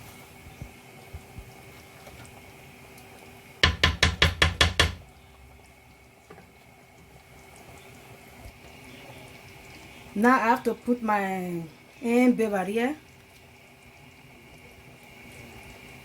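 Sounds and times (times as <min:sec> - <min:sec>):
utensil knocking on cooking pot: 0:03.6 - 0:05.0.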